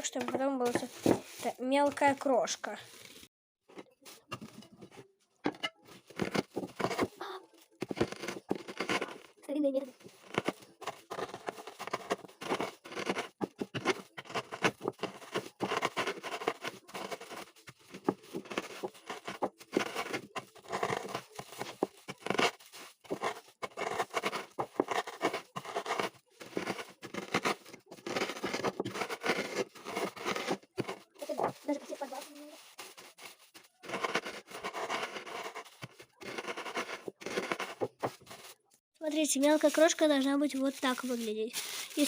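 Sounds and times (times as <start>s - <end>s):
cookies crunching: 5.6s - 38.6s
plastic bag crinkling: 29.6s - 33.9s, 39.3s - 42.0s.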